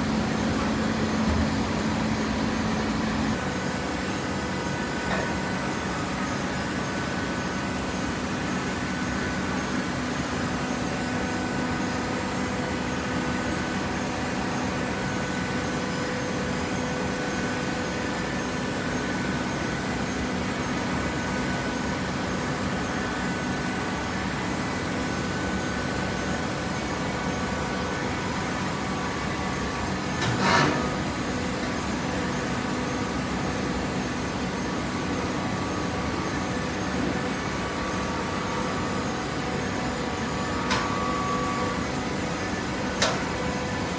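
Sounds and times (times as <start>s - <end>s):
hydraulic baler motor hum: 0.0s - 6.2s, 27.6s - 43.9s.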